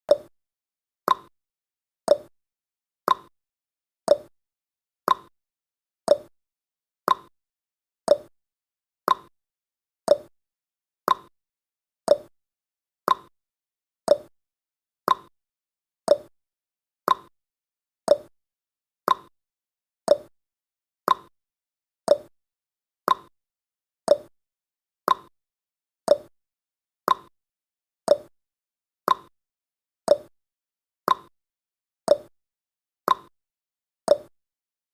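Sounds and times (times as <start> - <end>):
clock-like timer ticks: 0.1 - 0.3, 1.1 - 1.3, 2.1 - 2.3, 3.1 - 3.3, 4.1 - 4.3, 5.1 - 5.3, 6.1 - 6.3, 7.1 - 7.3, 8.1 - 8.3, 9.1 - 9.3, 10.1 - 10.3, 11.1 - 11.3, 12.1 - 12.3, 13.1 - 13.3, 14.1 - 14.3, 15.1 - 15.3, 16.1 - 16.3, 17.1 - 17.3, 18.1 - 18.3, 19.1 - 19.3, 20.1 - 20.3, 21.1 - 21.3, 22.1 - 22.3, 23.1 - 23.3, 24.1 - 24.3, 25.1 - 25.3, 26.1 - 26.3, 27.1 - 27.3, 28.1 - 28.3, 29.1 - 29.3, 30.1 - 30.3, 31.1 - 31.3, 32.1 - 32.3, 33.1 - 33.3, 34.1 - 34.3.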